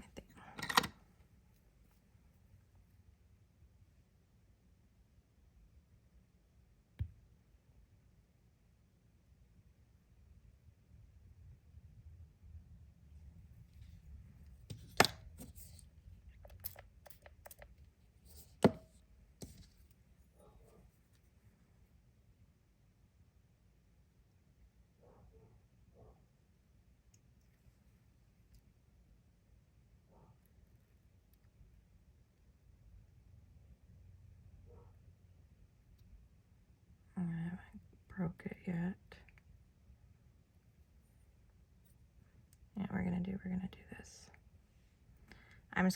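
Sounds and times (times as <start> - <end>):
low room hum: 0.0 - 45.9
objects knocking on a tabletop: 18.4 - 19.7.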